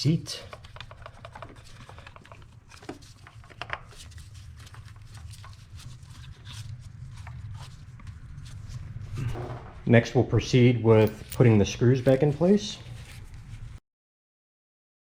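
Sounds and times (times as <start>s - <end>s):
low steady hum: 0.0s - 13.8s.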